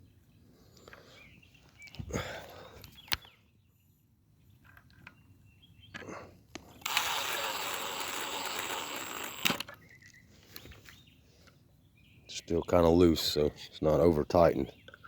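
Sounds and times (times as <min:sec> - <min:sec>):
power drill driving a screw: 0:06.8 - 0:09.7.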